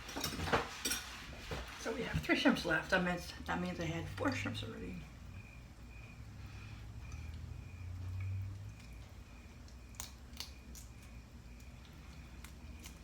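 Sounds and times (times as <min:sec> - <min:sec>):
low steady hum: 0:00.0 - 0:13.0
eating sounds: 0:03.4 - 0:13.0
soft squishing: 0:05.1 - 0:13.0.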